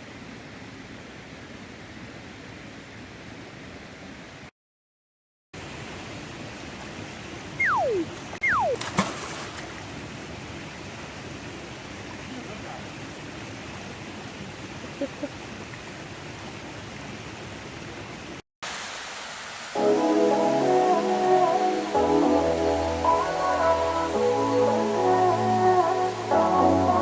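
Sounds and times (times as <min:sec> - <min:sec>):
falling whistle-like tones: 0:07.6 - 0:08.8.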